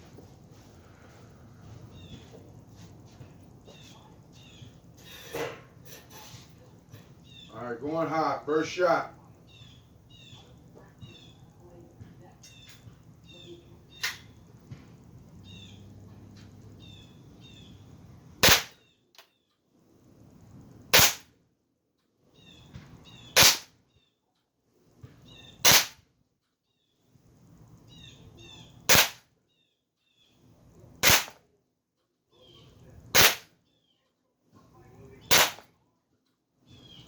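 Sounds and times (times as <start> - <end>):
pellet pistol shots: 18.4 - 18.8, 20.9 - 21.3, 23.4 - 23.7, 25.6 - 26.0, 28.9 - 29.3, 31.0 - 31.4, 33.1 - 33.5, 35.3 - 35.7.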